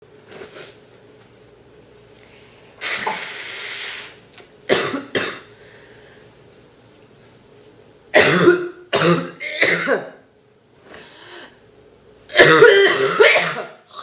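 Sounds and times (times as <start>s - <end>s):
woman coughing: 4.7s - 5.5s, 8.2s - 10.2s, 12.3s - 14.0s.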